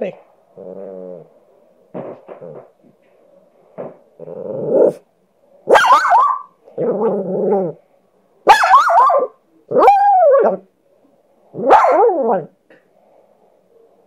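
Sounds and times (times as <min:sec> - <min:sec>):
dog bark-howling: 0:05.7 - 0:06.5, 0:08.5 - 0:10.6, 0:11.6 - 0:12.5.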